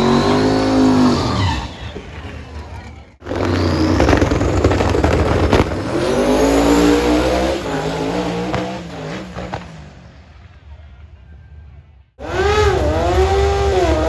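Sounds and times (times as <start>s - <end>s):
racing car engine accelerating: 0.0s - 10.0s, 12.2s - 14.0s.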